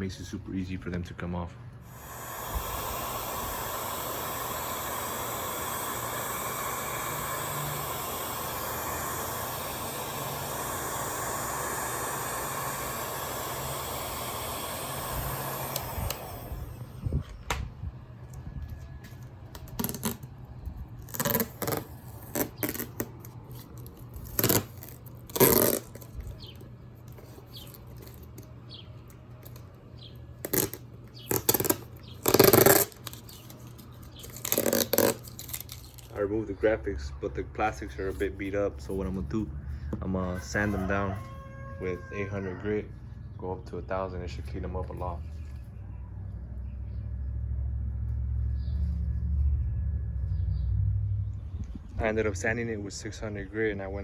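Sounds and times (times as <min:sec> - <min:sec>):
heat gun blowing: 0:01.8 - 0:18.5, 0:19.2 - 0:20.3, 0:21.0 - 0:28.3, 0:30.4 - 0:36.6
decals tearing and crinkling: 0:19.2 - 0:20.3, 0:21.0 - 0:26.4, 0:30.4 - 0:36.1.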